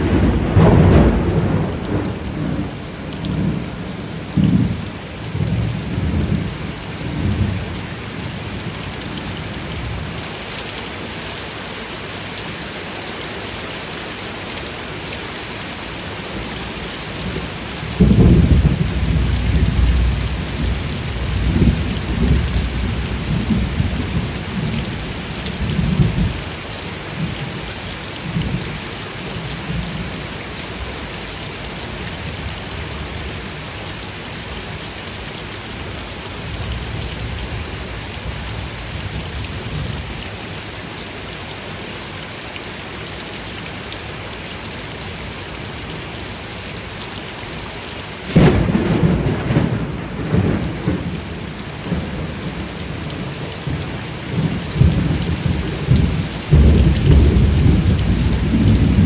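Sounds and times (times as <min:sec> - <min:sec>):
thunder rumbling: 0:00.0 - 0:07.8, 0:17.3 - 0:26.4, 0:48.3 - 0:59.0
steady rain falling: 0:00.0 - 0:59.0.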